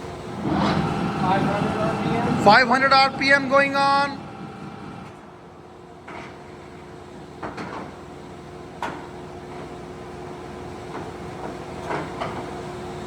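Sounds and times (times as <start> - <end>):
lathe running with steady hum: 0.2 - 5.6.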